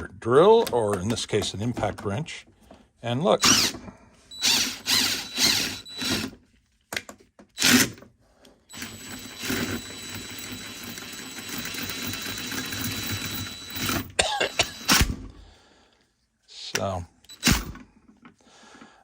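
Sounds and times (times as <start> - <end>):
impact wrench: 3.4 - 6.4, 7.6 - 8.0, 8.7 - 15.3, 17.3 - 17.9.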